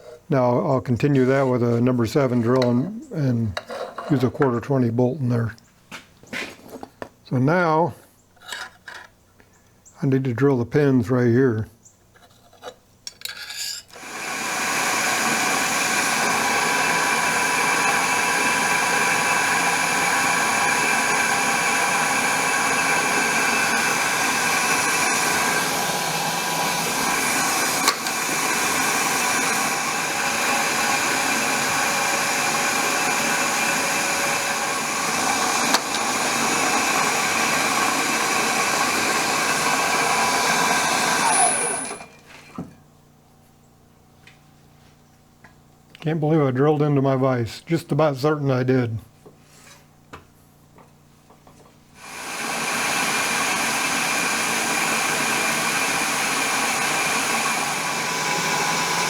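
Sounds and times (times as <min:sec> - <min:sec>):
electric drill drilling metal: 0:13.9 - 0:42.2, 0:52.0 - 0:59.0.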